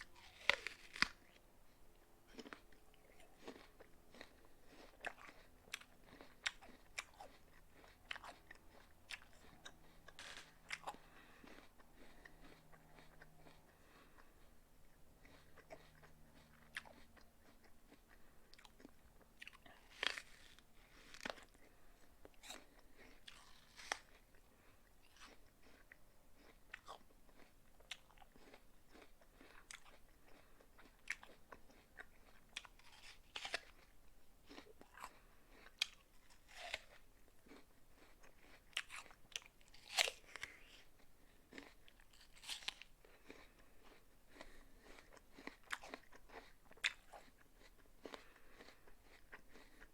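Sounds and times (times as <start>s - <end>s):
person crunching an apple: 0.0s - 1.4s, 2.3s - 49.9s.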